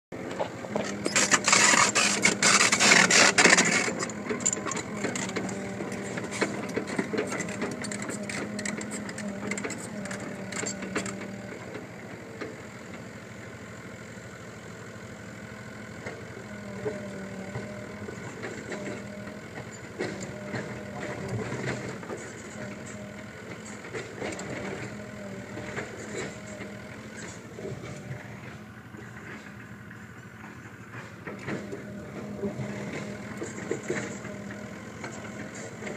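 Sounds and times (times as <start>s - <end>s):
backhoe motor running: 0.1s - 35.9s
scattered clicks: 0.8s - 11.5s.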